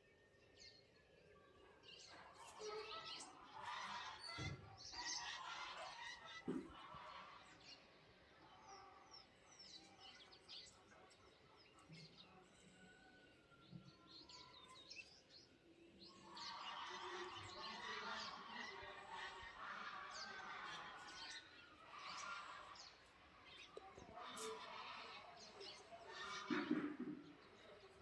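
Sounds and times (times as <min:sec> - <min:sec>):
small birds chirping: 0:13.6 - 0:28.0.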